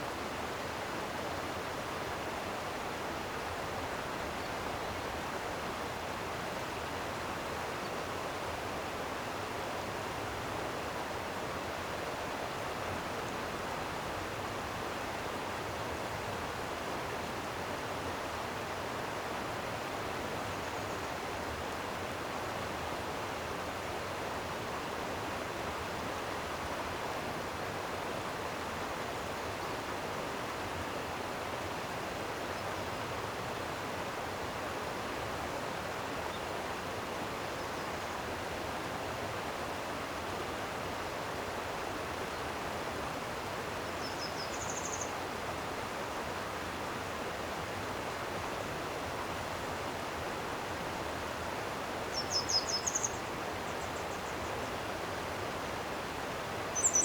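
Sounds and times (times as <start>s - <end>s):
stream flowing: 0.0s - 57.0s
small bird chirping: 44.0s - 45.1s, 52.1s - 54.3s, 56.8s - 57.0s.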